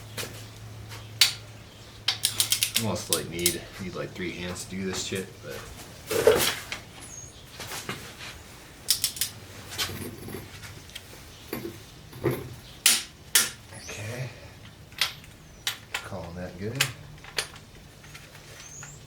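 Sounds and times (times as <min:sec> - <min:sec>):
metal tools clinking and scraping: 0:02.1 - 0:03.9, 0:08.9 - 0:13.6, 0:14.6 - 0:19.0.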